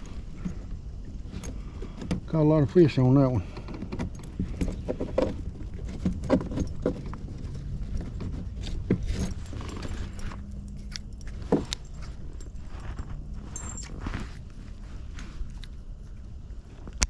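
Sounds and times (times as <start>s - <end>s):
low steady hum: 0.0s - 17.0s
metal fishing tackle clinking: 9.0s - 14.4s.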